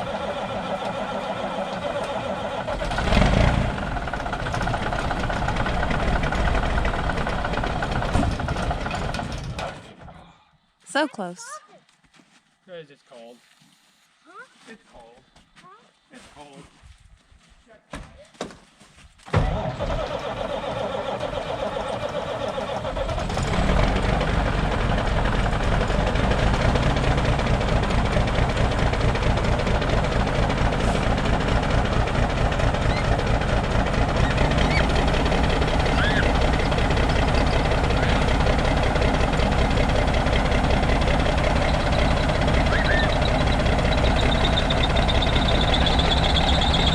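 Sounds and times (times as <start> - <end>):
diesel engine idling: 0.0 - 9.7, 19.5 - 46.9
starter cranking engine: 19.4 - 46.9.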